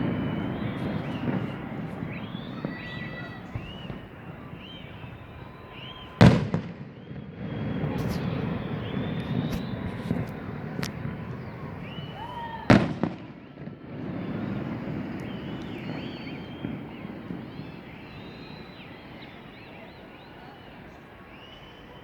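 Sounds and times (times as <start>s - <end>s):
firework shells cracking: 0.0s - 6.7s, 8.0s - 13.2s
loud firework bang: 0.0s - 18.7s.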